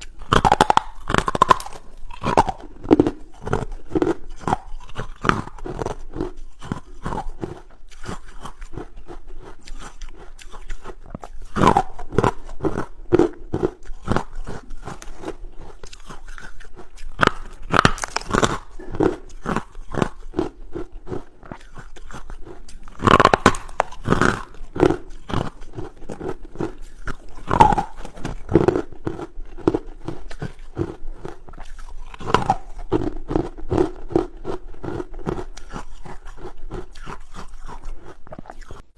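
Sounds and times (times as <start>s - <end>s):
ice being chewed: 0.0s - 38.9s.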